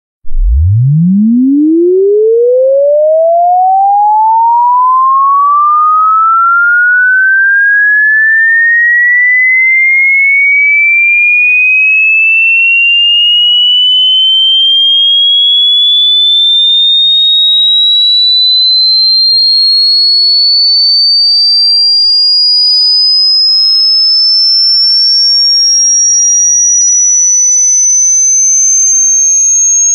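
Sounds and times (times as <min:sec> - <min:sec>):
rising sine tone sweep: 0:00.2 - 0:29.9.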